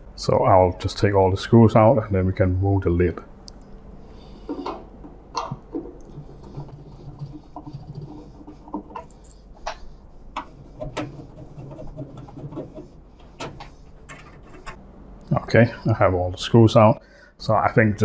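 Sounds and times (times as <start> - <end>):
faint low hum: 0.0 - 18.0.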